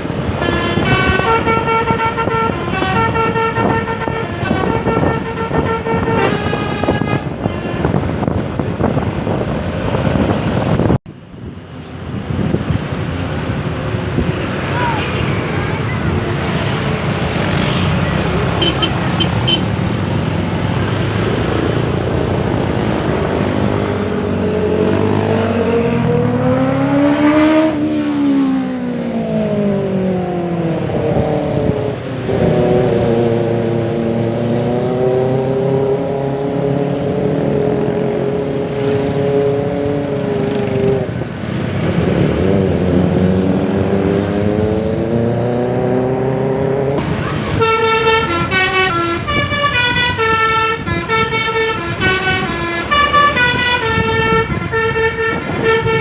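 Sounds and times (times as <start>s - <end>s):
bus engine and road rumble: 0.0s - 56.0s
musical bus horn: 0.2s - 8.2s, 47.4s - 56.0s.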